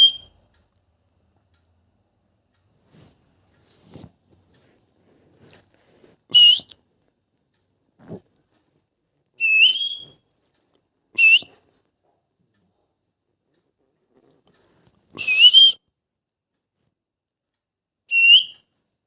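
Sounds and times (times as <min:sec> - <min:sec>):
parakeet calling: 0:00.0 - 0:00.3, 0:06.3 - 0:06.6, 0:09.4 - 0:10.2, 0:18.1 - 0:18.6.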